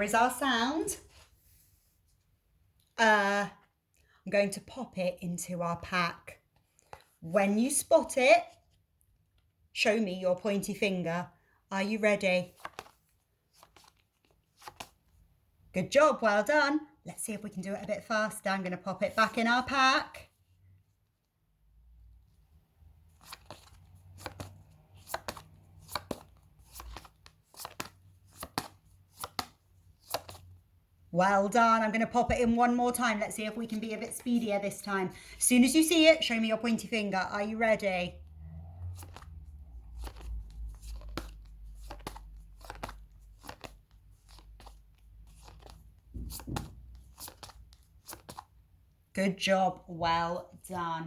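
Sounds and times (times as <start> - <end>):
paper flashcards flicking: 12.6 - 13.0, 13.6 - 15.0, 23.2 - 30.4, 40.0 - 48.5.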